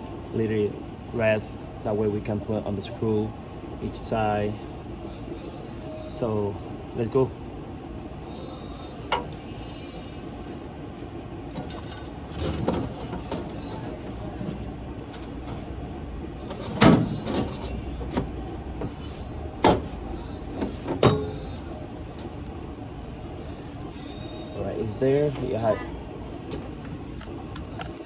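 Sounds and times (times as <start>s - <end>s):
low background rumble: 0.0s - 28.0s
metal knocks and scrapes: 11.5s - 15.7s.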